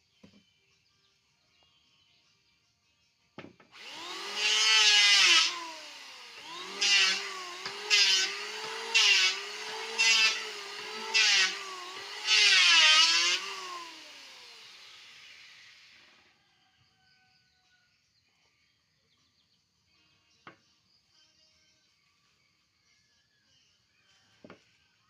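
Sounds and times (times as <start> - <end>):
electric planer shaving wood: 3.8 - 16.2.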